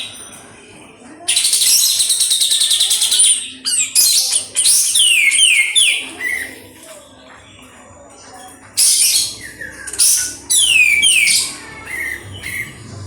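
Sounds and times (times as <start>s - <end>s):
bird singing: 1.3s - 6.7s, 8.4s - 13.0s.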